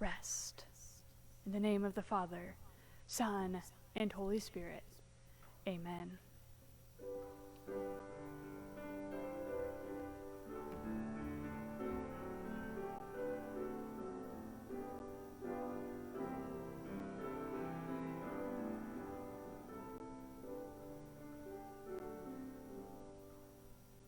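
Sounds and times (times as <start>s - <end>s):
piano playing slow chords: 7.0s - 24.0s.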